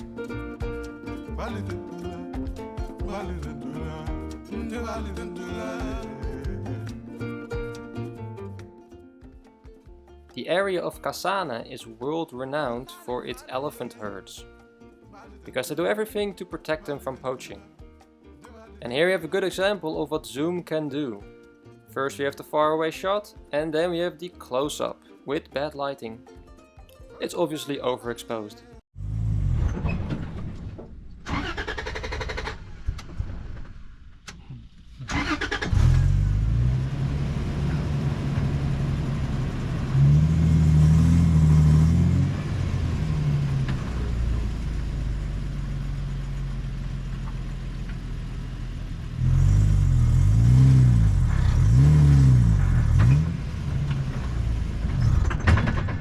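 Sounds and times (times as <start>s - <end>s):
vehicle engine revving: 35.0s - 55.3s.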